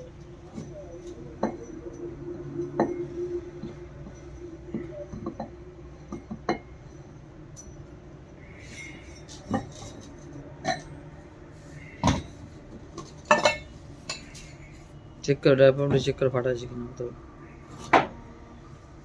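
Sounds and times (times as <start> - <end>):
faint steady hum: 0.0 - 19.0
metal parts clinking and knocking: 8.9 - 11.0, 12.0 - 14.6.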